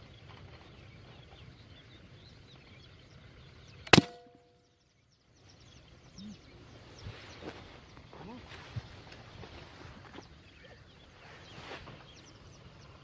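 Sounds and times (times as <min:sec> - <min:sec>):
airgun shot: 0:03.8 - 0:04.4.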